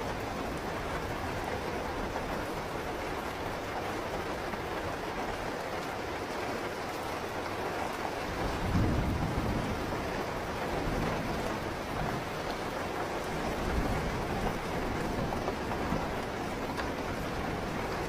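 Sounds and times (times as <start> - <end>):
steady rain falling: 0.0 - 18.0
low rumble of thunder: 8.1 - 18.0.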